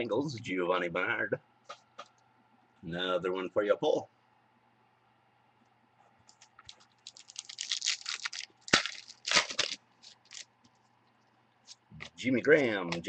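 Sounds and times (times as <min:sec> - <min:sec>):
card packaging crinkling and snapping: 0:06.3 - 0:10.8.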